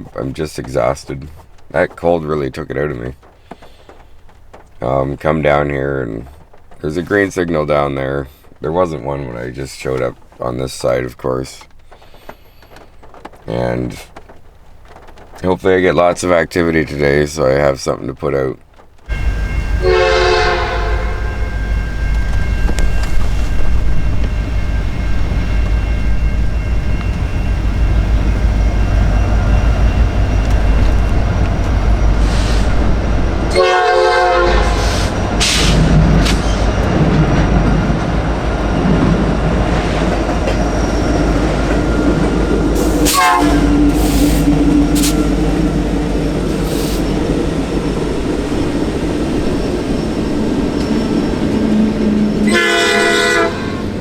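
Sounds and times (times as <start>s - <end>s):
train rumbling past: 0.0s - 54.0s
train horn blasts: 19.1s - 36.9s, 40.5s - 48.0s, 51.7s - 54.0s.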